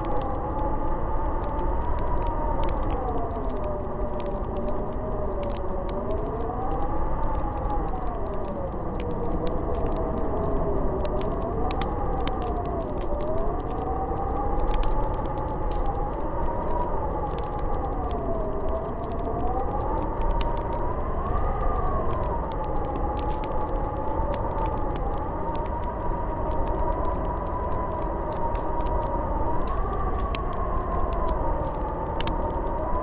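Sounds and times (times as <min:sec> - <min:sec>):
faint ticks: 0:00.0 - 0:33.0
howling wind whistle: 0:00.0 - 0:33.0.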